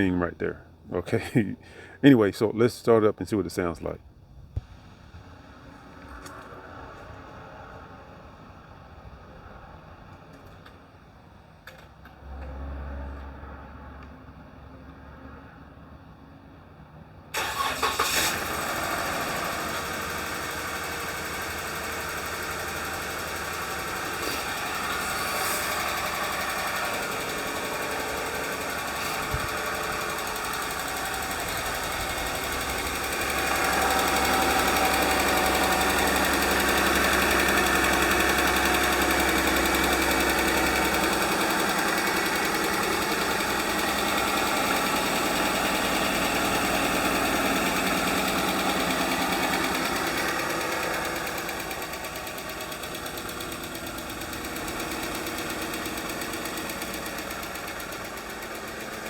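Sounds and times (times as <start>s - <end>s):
car engine running: 17.4s - 59.0s
engine lifter ticking: 17.4s - 59.0s.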